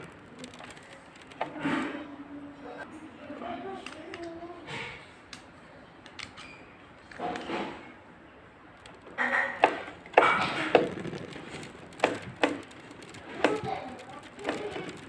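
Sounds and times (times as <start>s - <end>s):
scraping: 8.8s - 15.0s.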